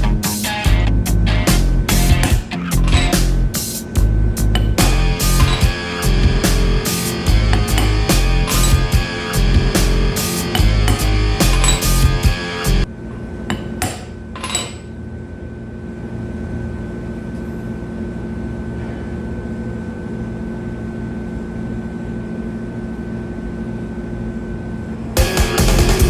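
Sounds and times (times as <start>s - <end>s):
low machine hum with whine: 0.0s - 25.2s
metal tools clinking: 2.7s - 3.2s.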